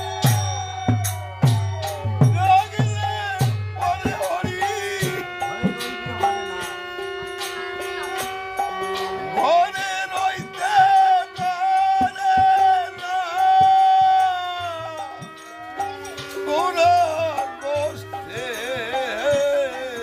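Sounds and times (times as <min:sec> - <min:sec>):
percussion strokes: 0:00.0 - 0:20.0
sliding lead melody: 0:00.0 - 0:20.0.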